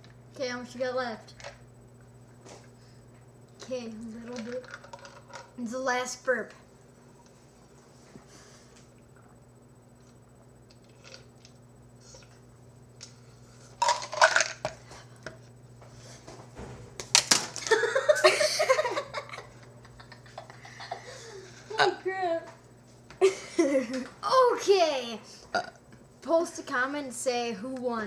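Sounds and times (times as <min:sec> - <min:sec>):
faint steady hum: 0:00.0 - 0:28.0
person burping: 0:25.5 - 0:25.8.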